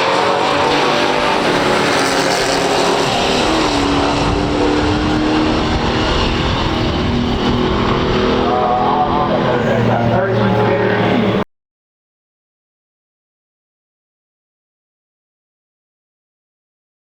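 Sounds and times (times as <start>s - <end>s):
muscle car engine running hard: 0.0s - 11.4s
steady droning note: 2.5s - 11.4s.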